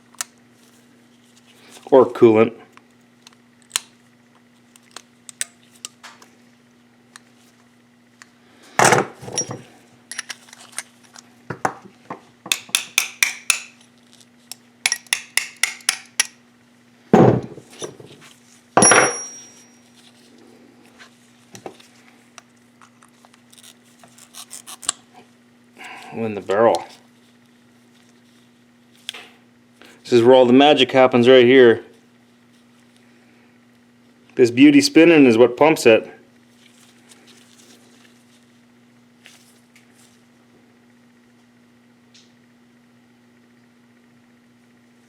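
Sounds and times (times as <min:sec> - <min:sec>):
metal parts clinking: 0:09.3 - 0:10.9, 0:18.8 - 0:19.7
loud ringing knocks: 0:18.8 - 0:19.6.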